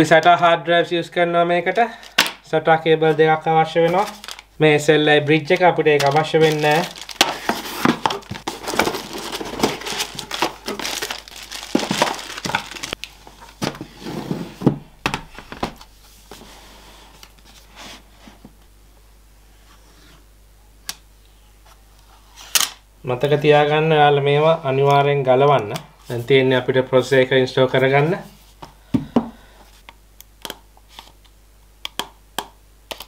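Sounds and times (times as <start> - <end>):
plastic bags crinkling: 3.8 - 4.6, 5.4 - 13.8.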